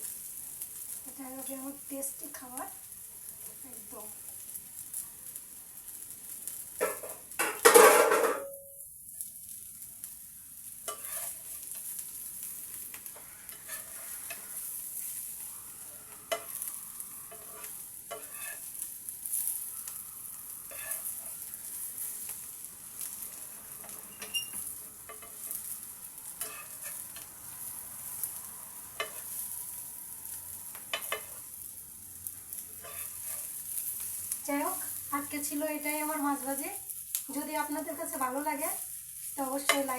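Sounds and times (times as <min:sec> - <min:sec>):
fish sizzling in hot oil: 0:00.0 - 0:39.9
utensil knocking and scraping pan: 0:06.8 - 0:08.5.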